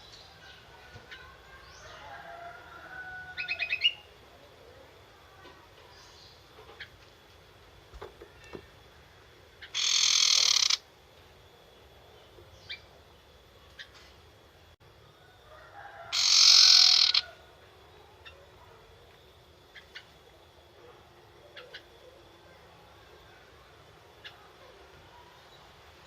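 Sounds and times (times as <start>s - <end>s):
bird rattling chatter call: 9.6s - 10.8s, 16.1s - 17.4s.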